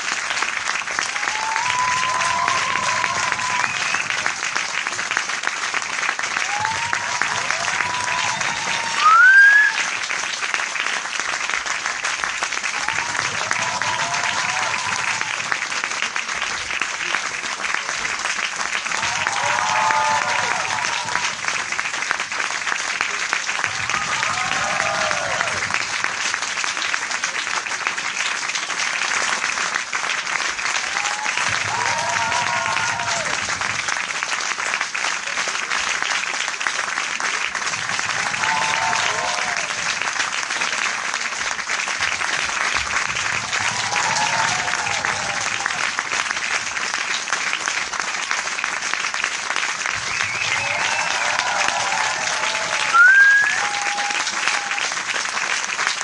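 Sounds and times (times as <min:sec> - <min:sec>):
crowd applause: 0:00.0 - 0:56.0
person cheering: 0:01.1 - 0:04.0, 0:06.4 - 0:09.8, 0:12.8 - 0:15.4, 0:19.0 - 0:21.3, 0:23.8 - 0:25.6, 0:38.2 - 0:39.8, 0:50.6 - 0:54.9.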